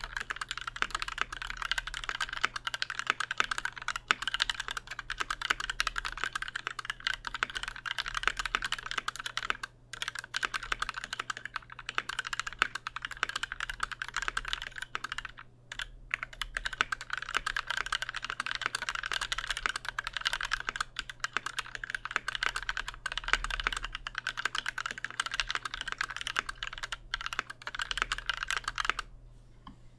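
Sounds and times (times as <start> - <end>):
mechanical keyboard typing: 0.0 - 29.1.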